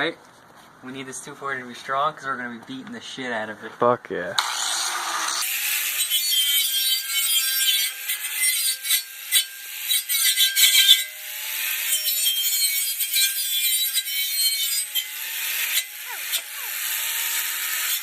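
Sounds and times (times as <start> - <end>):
angle grinder grinding metal: 4.4 - 18.0.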